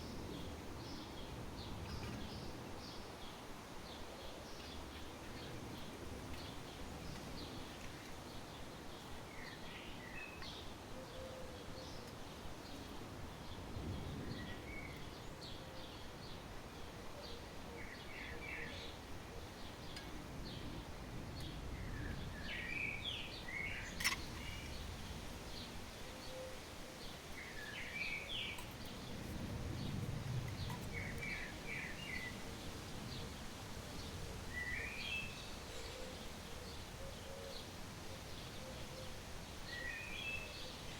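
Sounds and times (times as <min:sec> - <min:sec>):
small birds chirping: 0:12.0 - 0:40.9.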